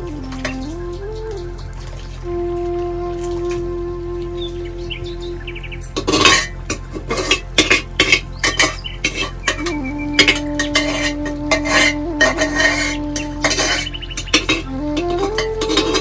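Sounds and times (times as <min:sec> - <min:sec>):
soft background music: 0:00.0 - 0:16.0
utensils clinking against dishes: 0:06.0 - 0:16.0.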